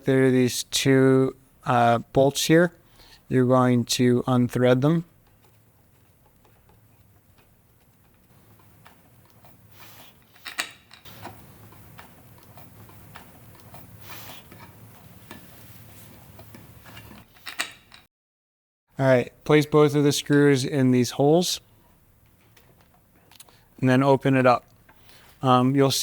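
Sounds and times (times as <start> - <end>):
bolts being unthreaded clicking: 10.3 - 13.8.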